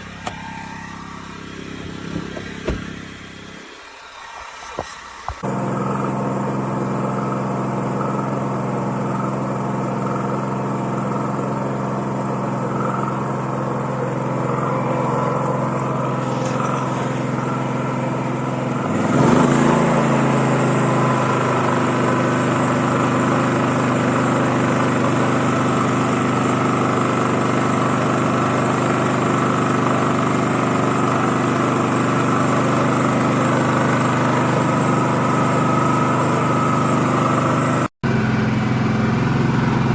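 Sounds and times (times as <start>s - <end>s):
generator engine running: 0.0s - 39.9s.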